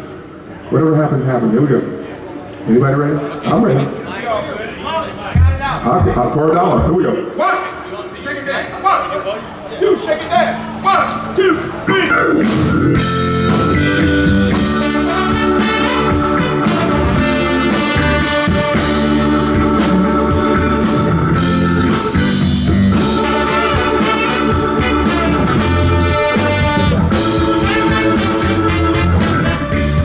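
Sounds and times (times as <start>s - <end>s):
funk band playing live: 5.3s - 7.2s, 10.6s - 30.0s.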